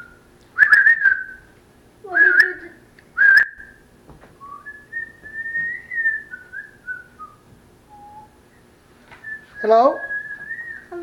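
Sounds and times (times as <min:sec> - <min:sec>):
person whistling: 0:00.0 - 0:01.5, 0:02.2 - 0:02.6, 0:03.2 - 0:03.8, 0:04.4 - 0:08.4, 0:09.2 - 0:11.0.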